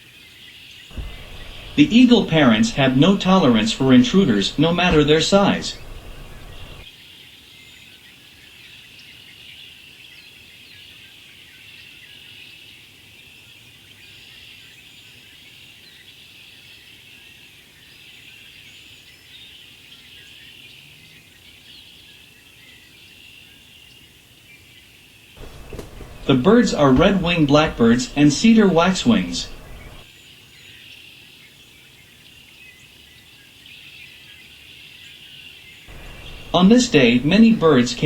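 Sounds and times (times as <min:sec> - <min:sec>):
flock of birds chirping: 0:00.9 - 0:06.9, 0:25.4 - 0:30.1, 0:33.6 - 0:38.0.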